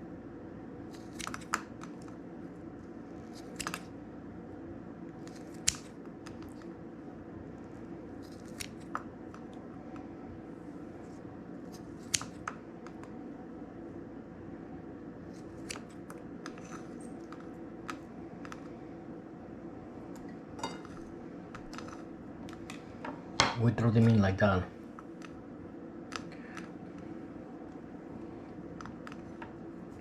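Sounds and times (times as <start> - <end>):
steady low hum: 0.0 - 30.0
scissors snipping: 0.9 - 2.2, 3.3 - 3.9, 5.2 - 6.6, 8.3 - 9.0, 11.7 - 13.0.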